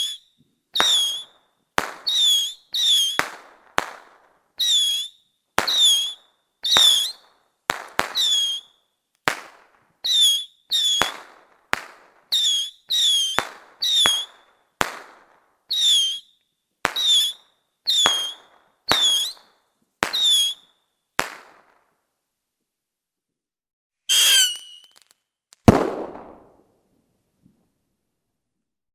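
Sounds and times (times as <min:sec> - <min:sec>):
high whistle of fireworks: 0:00.0 - 0:21.6, 0:24.1 - 0:26.6
fireworks cracking: 0:00.8 - 0:20.6, 0:21.2 - 0:21.9, 0:24.1 - 0:26.7
crackling tail: 0:04.6 - 0:07.2.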